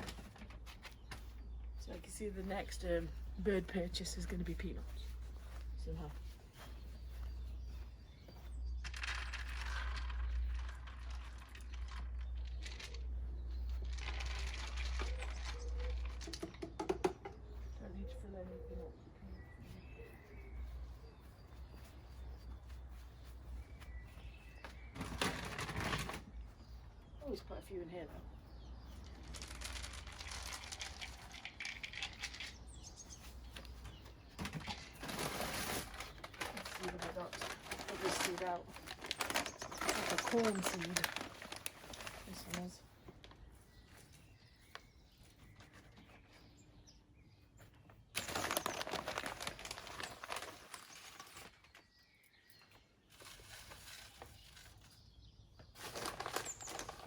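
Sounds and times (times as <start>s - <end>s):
crinkling rustling handling noise: 0.0s - 16.7s, 18.9s - 57.0s
faint bird chirping: 0.0s - 57.0s
bird seed pouring: 8.7s - 16.7s, 29.0s - 33.1s, 34.5s - 42.8s, 48.2s - 51.8s, 53.1s - 55.0s, 55.8s - 57.0s.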